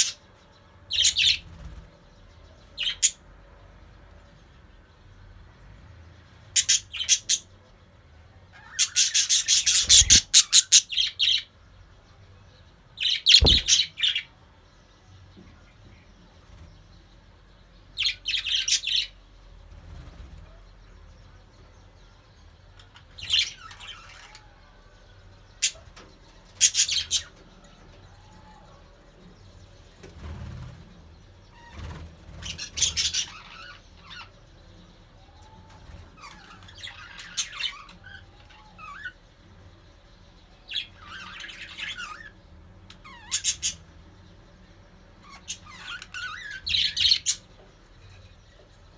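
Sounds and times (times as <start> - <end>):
budgerigars chirping and chattering: 0.0 - 0.3, 0.9 - 3.2, 6.4 - 7.8, 8.5 - 12.0, 13.0 - 14.4, 17.9 - 48.9
low thump: 13.4 - 13.8.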